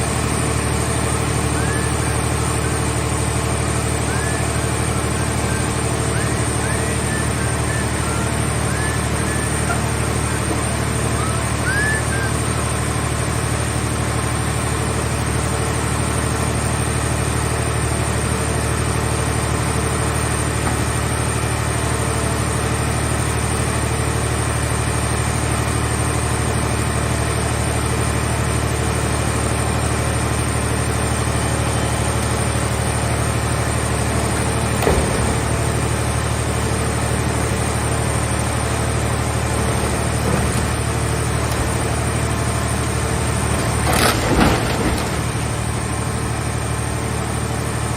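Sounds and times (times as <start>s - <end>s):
car baler engine running: 0.0s - 47.9s.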